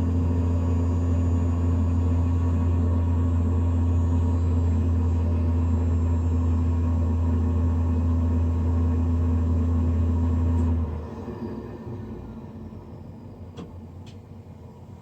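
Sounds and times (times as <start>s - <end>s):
boiler fan droning: 0.0s - 11.2s.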